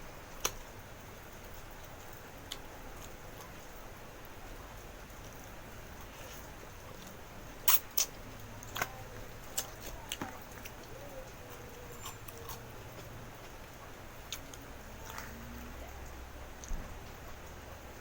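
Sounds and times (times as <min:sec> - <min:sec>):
mouth clicks and smacks chewing: 0:01.5 - 0:03.6, 0:05.2 - 0:17.4.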